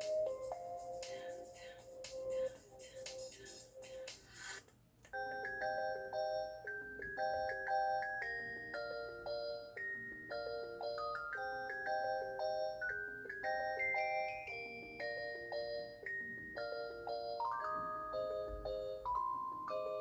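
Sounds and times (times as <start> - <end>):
phone ringtone melody: 5.2 - 20.0.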